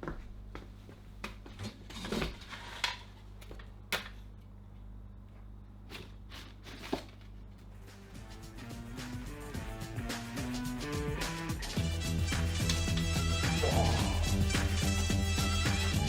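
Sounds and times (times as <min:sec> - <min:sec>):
steady low hum: 0:07.4 - 0:16.0.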